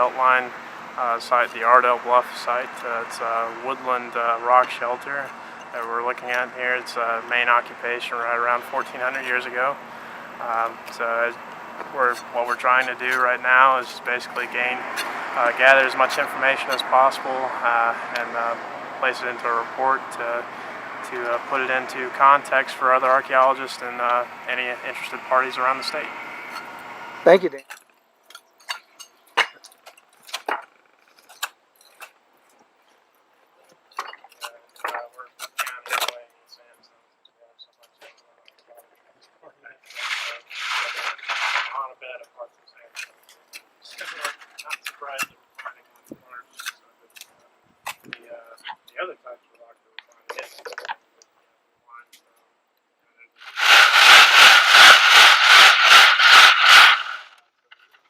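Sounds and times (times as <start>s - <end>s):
hand tools scraping stony soil: 39.8s - 41.8s, 53.4s - 57.4s.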